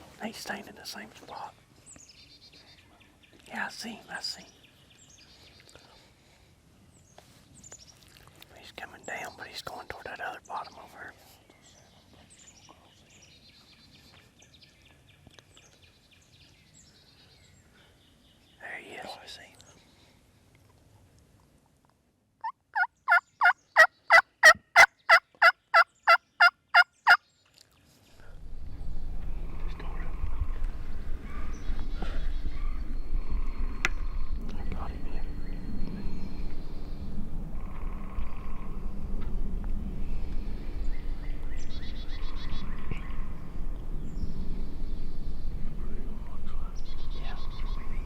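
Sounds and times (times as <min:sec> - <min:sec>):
songbirds singing: 0:00.2 - 0:20.5, 0:22.4 - 0:28.7, 0:29.7 - 0:39.1, 0:40.0 - 0:48.0
turkey yelping: 0:22.4 - 0:27.2
steady low rumble: 0:28.1 - 0:48.0.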